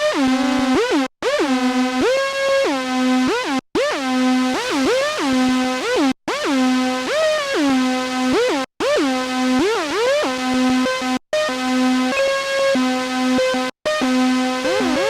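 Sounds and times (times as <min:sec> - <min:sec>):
synthesiser lead with gliding notes: 0:00.1 - 0:01.0.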